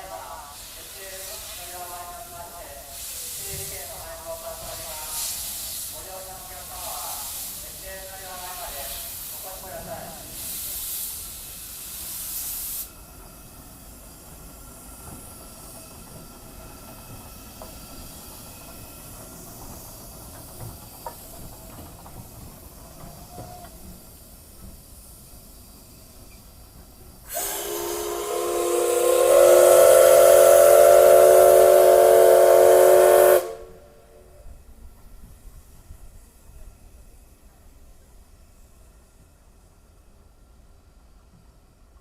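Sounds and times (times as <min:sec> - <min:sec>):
steam hissing: 0:00.0 - 0:39.2
steam locomotive whistle: 0:27.3 - 0:34.3.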